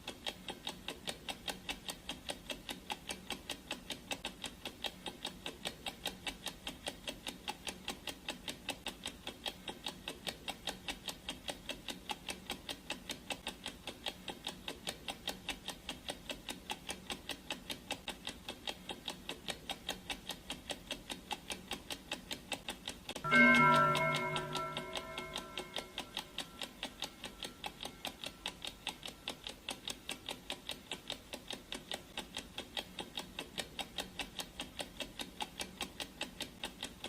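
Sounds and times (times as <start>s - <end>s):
clock ticking rapidly: 0.0s - 37.0s
gong ringing: 23.3s - 26.5s.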